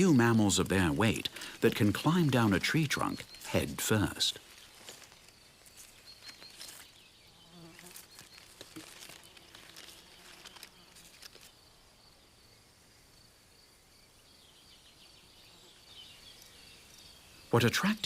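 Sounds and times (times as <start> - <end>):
light scratches and rustles: 4.3 - 11.6.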